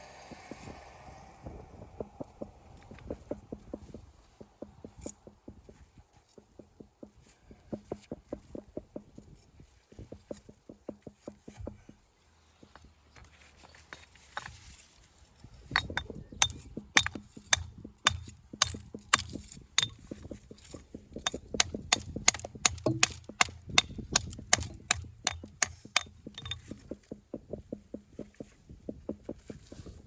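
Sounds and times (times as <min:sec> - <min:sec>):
hammer striking stone: 0:15.7 - 0:20.3, 0:21.2 - 0:26.8.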